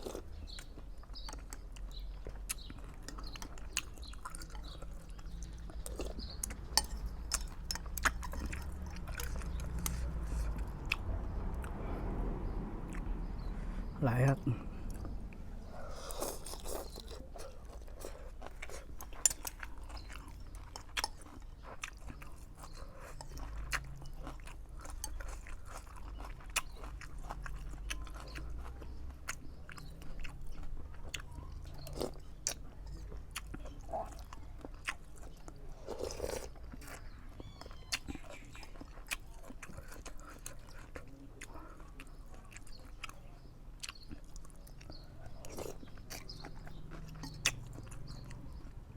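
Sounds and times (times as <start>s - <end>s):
person chewing crunchy food: 0.0s - 12.0s, 14.6s - 48.9s.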